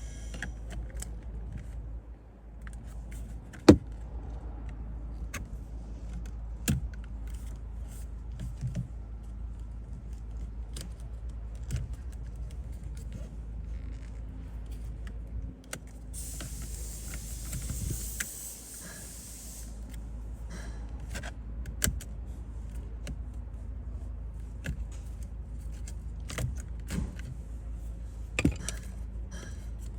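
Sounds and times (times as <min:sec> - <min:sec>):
low steady hum: 0:00.0 - 0:04.4
tools and plastic parts clicking: 0:28.4 - 0:29.9.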